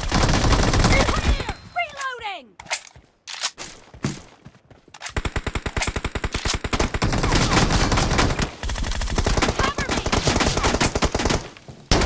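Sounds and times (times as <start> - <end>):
video game gunfire: 5.1 - 12.0.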